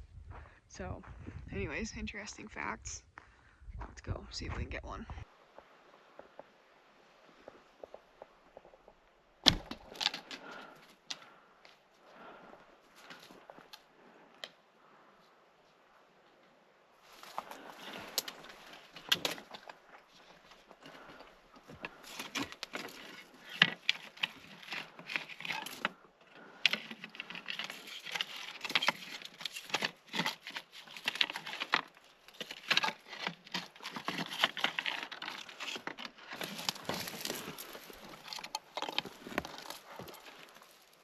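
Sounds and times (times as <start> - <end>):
brush rustling and crackling: 17.0 - 41.0
footsteps crunching in snow: 35.4 - 41.0.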